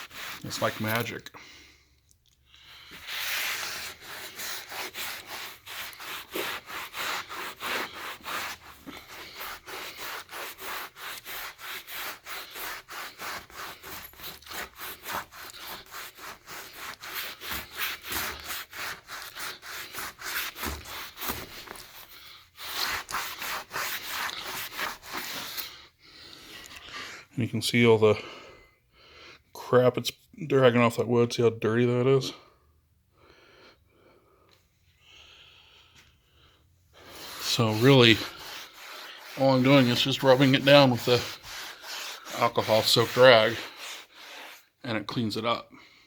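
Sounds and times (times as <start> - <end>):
cloth rag rubbing on wood: 0.0 - 1.2, 2.9 - 25.7, 37.0 - 45.6.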